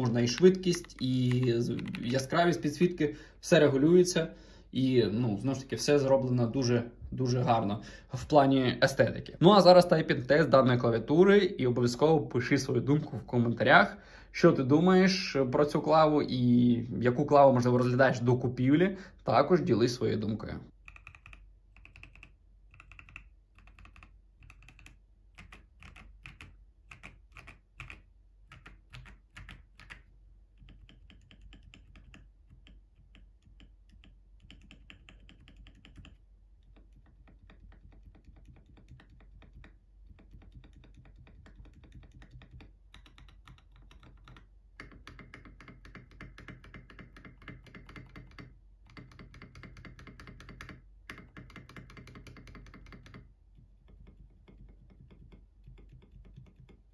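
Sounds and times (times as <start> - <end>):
mechanical keyboard typing: 0.0 - 2.8, 20.8 - 53.2.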